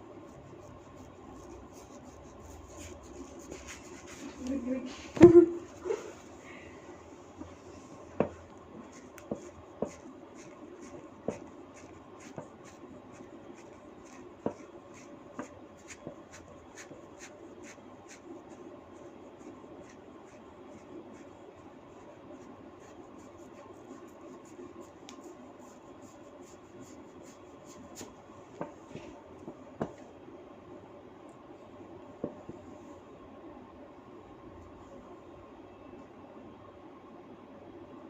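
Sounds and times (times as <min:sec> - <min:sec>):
hands scratching hair: 0:00.2 - 0:04.8, 0:08.8 - 0:18.6, 0:22.0 - 0:28.2.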